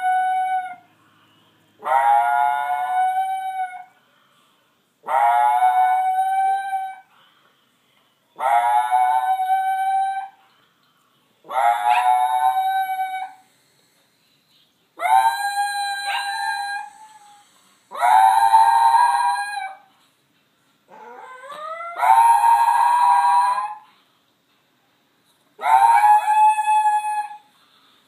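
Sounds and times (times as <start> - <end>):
dog howling: 5.1 - 7.0, 11.5 - 13.4, 15.0 - 19.8, 20.9 - 23.8, 25.6 - 27.4.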